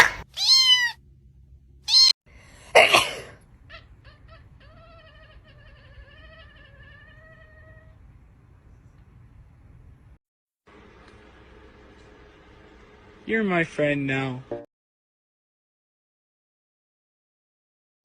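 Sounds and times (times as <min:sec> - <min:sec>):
cat chirps: 0:00.0 - 0:01.0, 0:01.9 - 0:02.2, 0:03.5 - 0:08.0
cat harsh outbursts: 0:00.0 - 0:01.0, 0:01.9 - 0:02.1, 0:02.8 - 0:08.0
cat meowing: 0:00.0 - 0:01.0, 0:01.9 - 0:02.2, 0:03.6 - 0:08.1.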